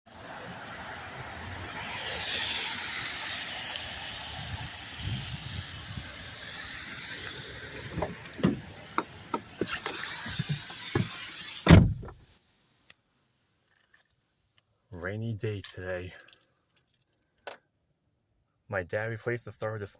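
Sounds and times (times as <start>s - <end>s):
rain hissing: 0.1s - 11.8s
heavy thump: 11.7s - 12.2s.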